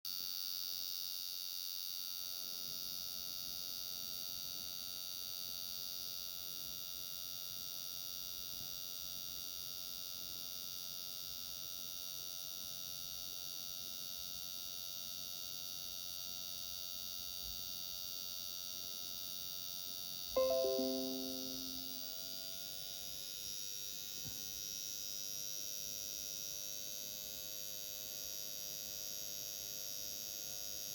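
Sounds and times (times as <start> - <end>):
falling chime: 20.4 - 22.8.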